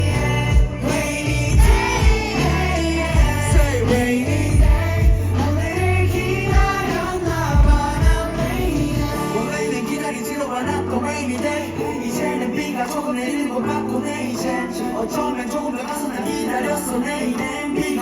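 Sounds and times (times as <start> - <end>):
bass: 0.0 - 12.2
person singing: 0.0 - 18.0
kick drum beat: 1.6 - 2.4, 3.2 - 3.8, 4.6 - 5.3, 7.6 - 8.4.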